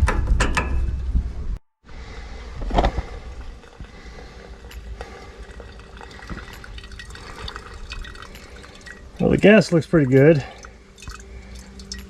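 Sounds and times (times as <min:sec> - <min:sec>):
fuel trickling and dripping: 0:03.4 - 0:12.0.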